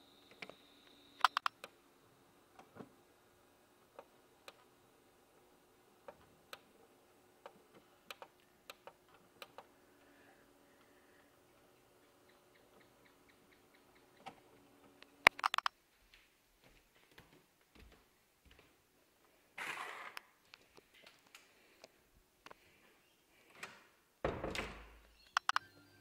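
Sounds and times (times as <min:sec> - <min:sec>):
sharp clicks: 0:01.2 - 0:01.7, 0:15.0 - 0:15.7, 0:25.2 - 0:25.6.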